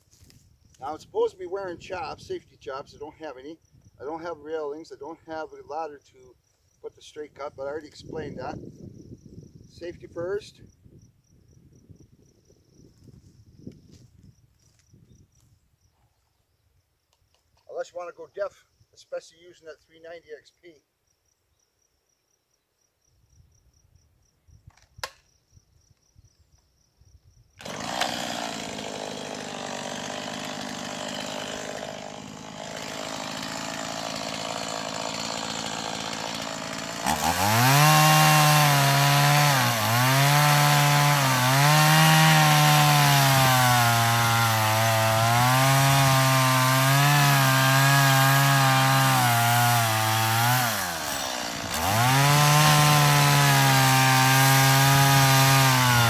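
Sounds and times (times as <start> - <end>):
chainsaw cutting wood: 27.6 - 56.0.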